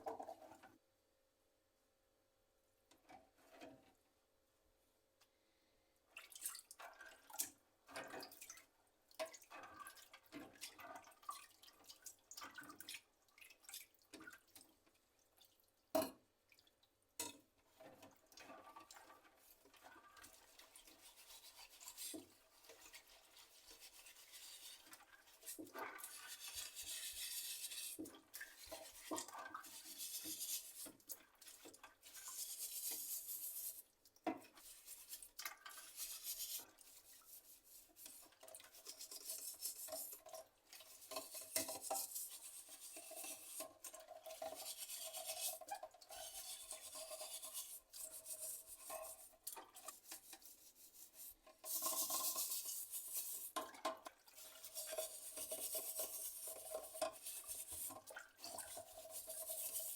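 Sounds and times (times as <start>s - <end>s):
scrubbing and scraping: 34.6s - 53.6s.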